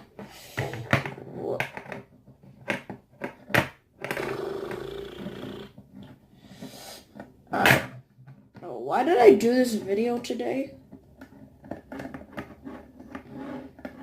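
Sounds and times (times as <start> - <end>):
plastic case clicks and knocks: 0.6 - 4.2
low growl-like vocal sound: 4.1 - 5.7.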